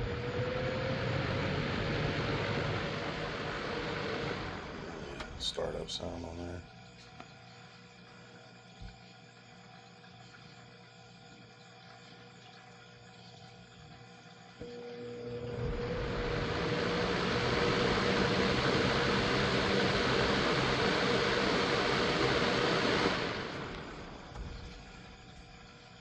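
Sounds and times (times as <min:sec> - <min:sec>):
box fan motor hum and air rush: 0:00.0 - 0:05.8, 0:14.7 - 0:24.8.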